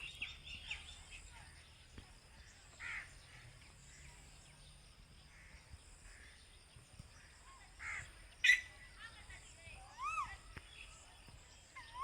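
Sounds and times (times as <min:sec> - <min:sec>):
bird calling: 0:07.2 - 0:08.9, 0:09.7 - 0:12.0.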